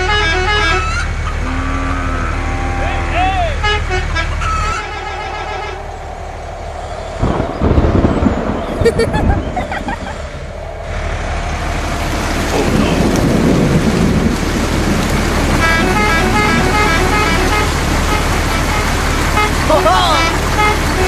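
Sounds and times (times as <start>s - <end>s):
short horn-like tones: 0.0s - 6.3s, 15.5s - 21.0s
vehicle engine running: 0.0s - 21.0s.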